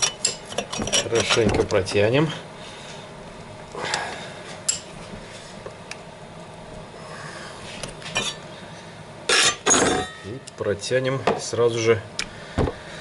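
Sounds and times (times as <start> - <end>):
metal tools clinking: 0.0 - 1.6, 9.3 - 10.3.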